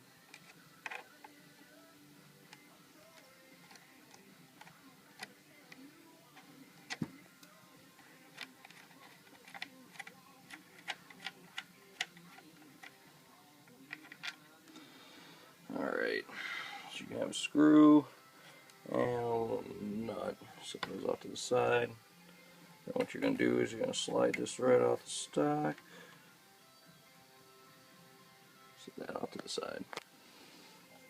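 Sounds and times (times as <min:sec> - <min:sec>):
screwdriver and metal parts clicking: 0:07.9 - 0:13.0, 0:13.8 - 0:14.4.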